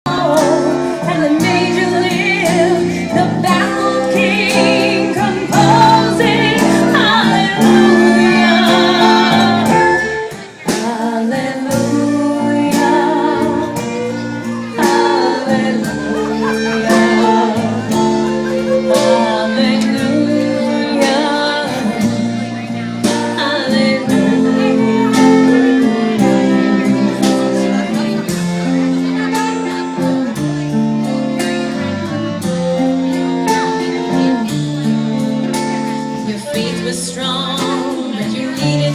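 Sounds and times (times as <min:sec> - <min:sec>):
person singing with vibrato: 0:00.0 - 0:29.2
strummed acoustic guitar: 0:00.1 - 0:38.9.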